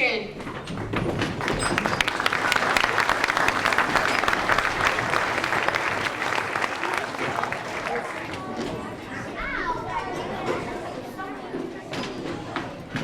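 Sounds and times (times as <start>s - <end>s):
audience applauding: 0.8s - 8.7s.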